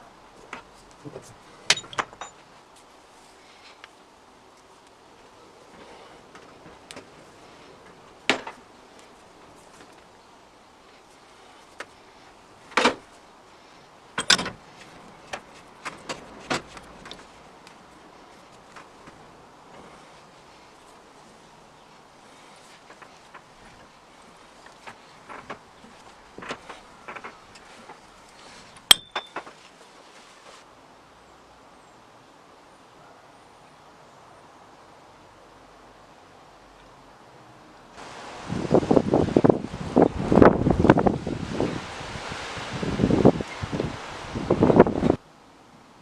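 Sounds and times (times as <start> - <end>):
faint steady hiss: 0.0 - 46.0
ringing metal clink: 1.7 - 2.4, 28.8 - 29.4
metal pipe cutter clicks and taps: 28.9 - 29.3.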